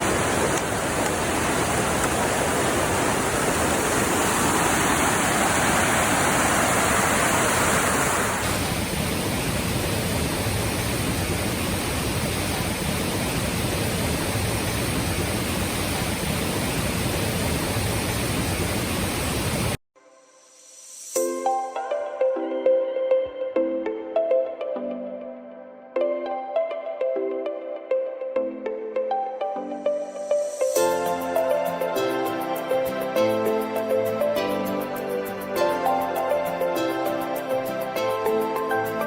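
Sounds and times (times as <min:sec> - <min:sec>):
waterfall rushing: 0:00.0 - 0:13.9.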